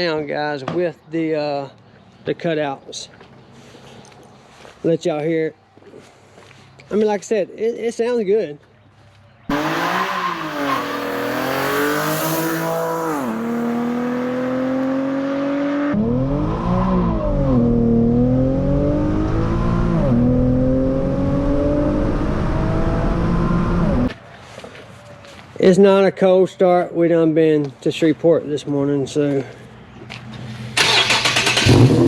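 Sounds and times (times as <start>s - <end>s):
car engine revving through exhaust: 9.5s - 24.1s, 31.6s - 32.0s.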